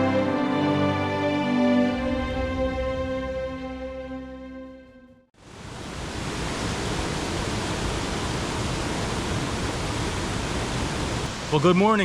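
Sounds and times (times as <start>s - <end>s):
rushing mountain stream: 5.4s - 12.0s.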